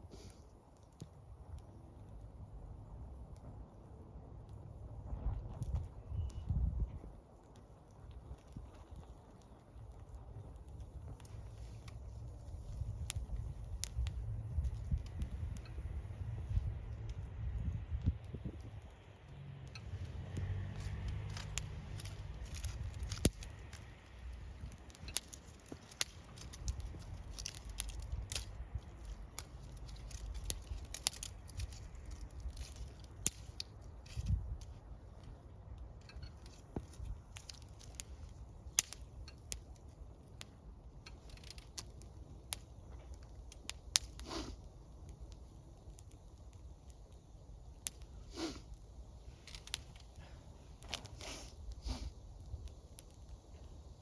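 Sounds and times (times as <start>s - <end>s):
campfire crackling and popping: 0.0s - 54.0s.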